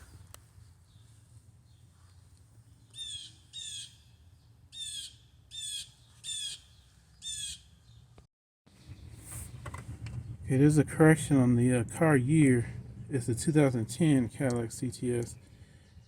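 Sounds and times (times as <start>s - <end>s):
bird squawking: 4.8s - 7.7s.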